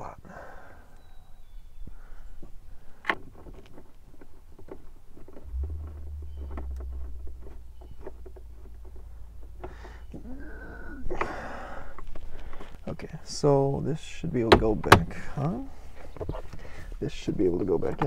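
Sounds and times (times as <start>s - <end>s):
low hum: 5.4s - 12.2s.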